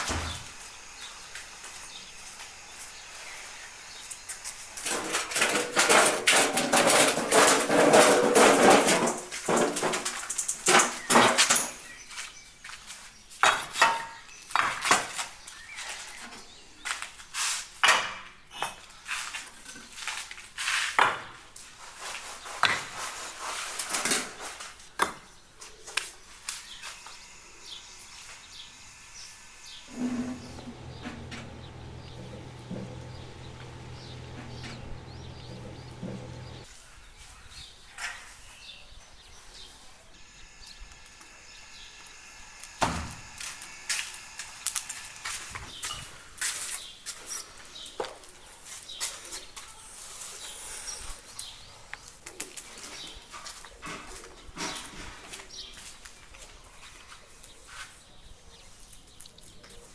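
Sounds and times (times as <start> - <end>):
rustling or scraping: 4.8 - 11.6, 29.9 - 36.7.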